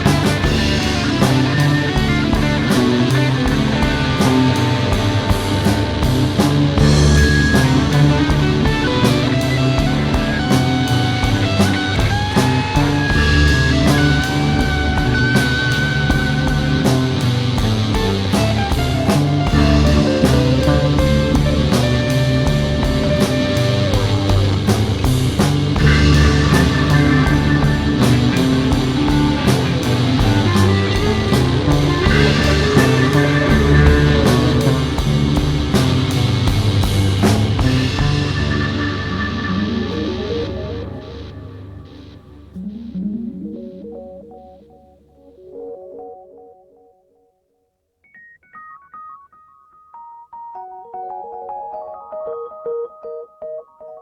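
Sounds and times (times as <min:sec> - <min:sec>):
drum kit beat: 0:00.0 - 0:42.2
bass line: 0:00.0 - 0:45.1
lead electric guitar: 0:00.0 - 0:46.4.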